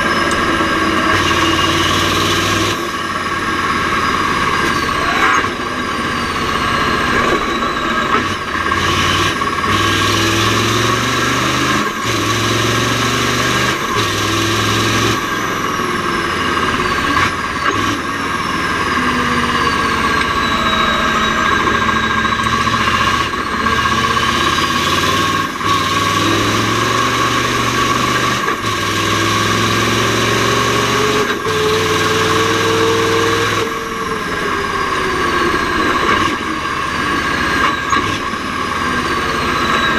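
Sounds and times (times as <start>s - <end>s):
high whine: 0.0s - 28.0s
truck engine revving under load: 0.0s - 39.9s.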